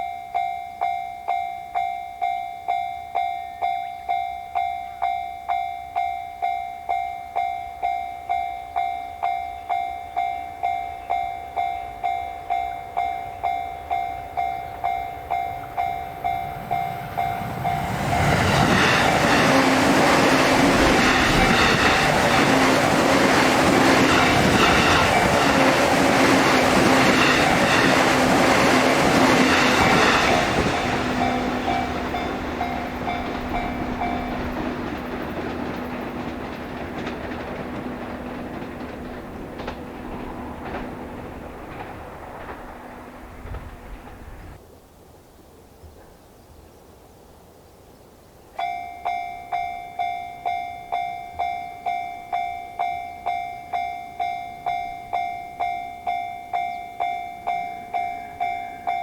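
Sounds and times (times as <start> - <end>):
electric train passing: 0.0 - 44.6, 48.6 - 59.0
level crossing bell ringing: 48.6 - 59.0.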